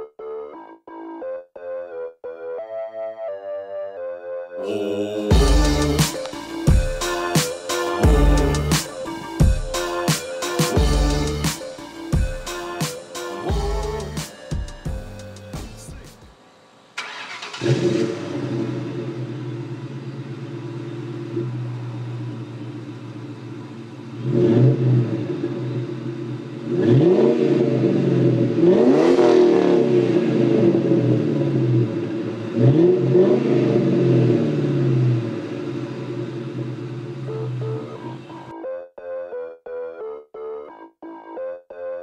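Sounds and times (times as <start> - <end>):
car engine idling and revving: 5.4 - 38.5.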